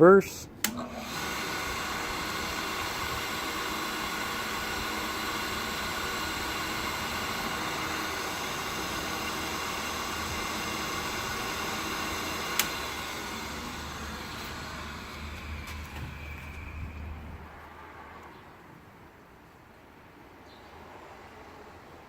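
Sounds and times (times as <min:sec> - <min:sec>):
grinder motor humming: 0:00.6 - 0:17.6
machine switch click: 0:12.5 - 0:12.9.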